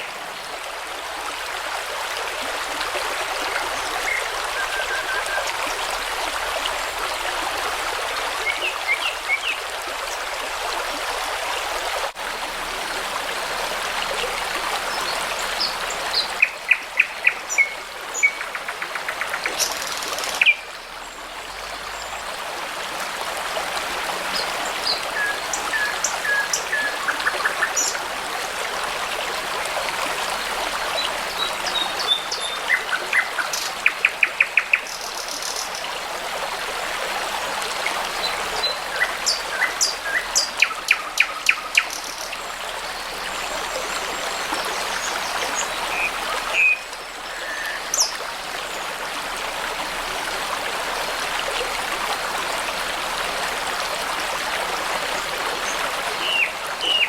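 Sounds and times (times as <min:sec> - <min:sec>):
babbling brook: 0:00.0 - 0:57.0
songbirds singing: 0:37.8 - 0:48.2, 0:55.6 - 0:57.0.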